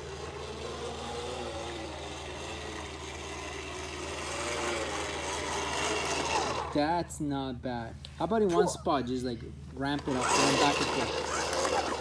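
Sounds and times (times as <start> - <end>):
toy bubble mower whirring: 0.0 - 6.8, 9.9 - 12.0.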